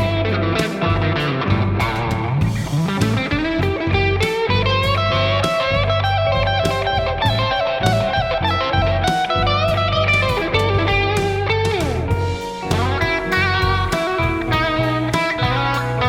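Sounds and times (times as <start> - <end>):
bass line: 0.0 - 16.0
electric guitar lead with bends: 0.0 - 16.0
steady beat: 0.0 - 16.0.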